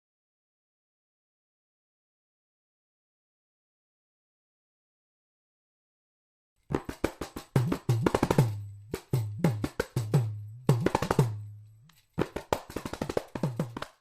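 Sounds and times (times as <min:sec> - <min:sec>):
sharp clicky percussion hits: 0:06.7 - 0:11.6
deep drum notes: 0:07.4 - 0:11.5.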